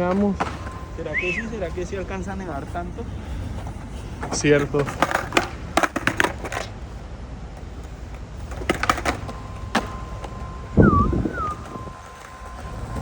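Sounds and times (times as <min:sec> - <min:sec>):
thin whistle-like tone: 0:00.4 - 0:02.4, 0:09.2 - 0:13.0
low rumble: 0:09.5 - 0:13.0.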